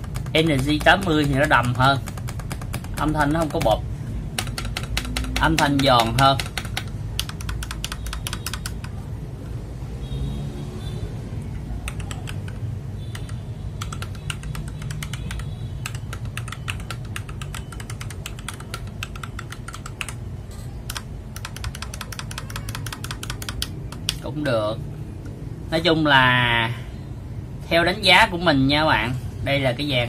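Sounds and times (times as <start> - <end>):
typing on mechanical keyboard: 0.0 - 9.0, 11.6 - 24.4.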